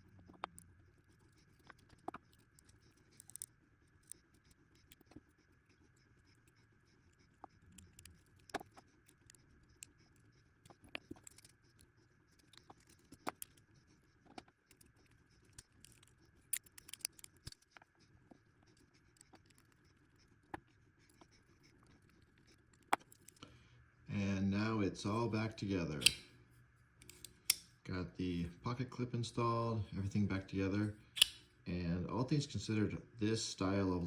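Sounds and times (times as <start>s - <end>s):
light clicks of knife parts: 26.0s - 26.3s, 27.0s - 27.7s, 31.2s - 31.5s.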